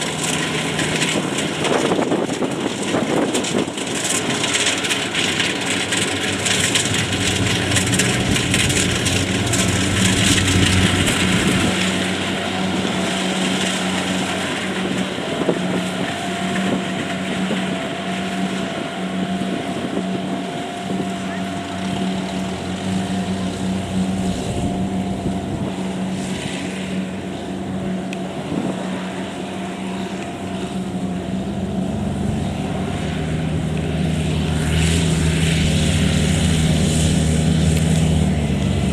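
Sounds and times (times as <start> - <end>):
combine harvester diesel engine: 0.0 - 38.9.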